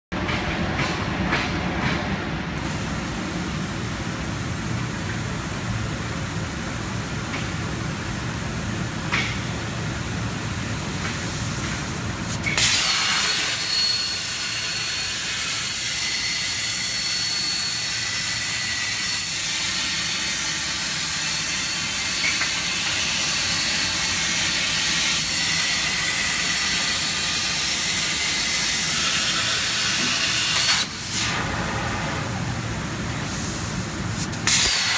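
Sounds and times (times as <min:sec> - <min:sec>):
plasma torch cutting steel: 0:11.2 - 0:32.2, 0:33.2 - 0:34.9.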